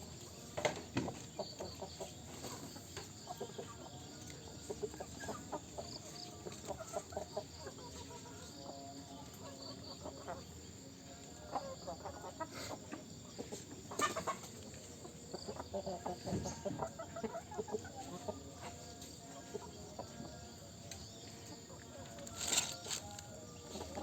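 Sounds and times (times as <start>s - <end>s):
chickens clucking: 0.0s - 24.0s.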